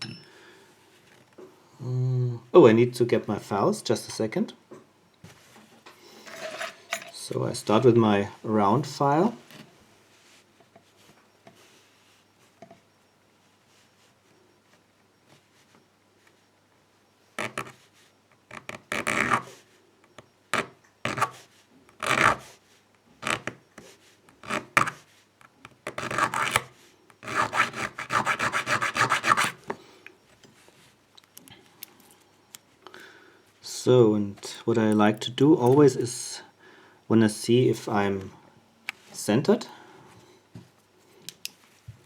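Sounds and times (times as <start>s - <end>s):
hand file rasping on key: 17.4s - 17.8s, 18.5s - 19.6s, 20.5s - 22.5s, 23.2s - 23.6s, 24.3s - 25.0s, 25.8s - 29.6s.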